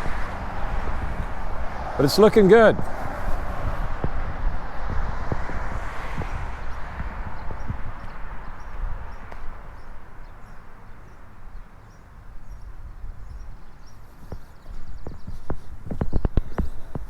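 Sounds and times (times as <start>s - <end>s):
wind rumble on microphone: 0.0s - 17.0s
footsteps on hard surface: 2.7s - 8.2s.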